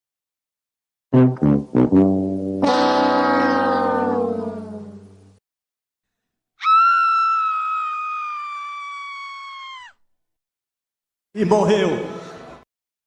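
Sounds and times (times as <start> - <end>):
musical chord: 1.2 - 5.4
long high-pitched scream: 6.6 - 10.0.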